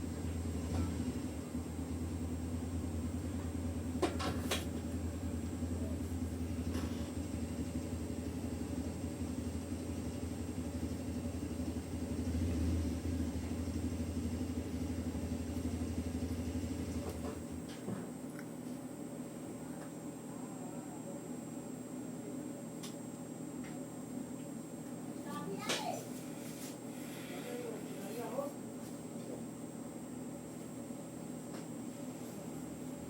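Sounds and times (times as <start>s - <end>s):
low motor rumble: 0.0s - 21.5s.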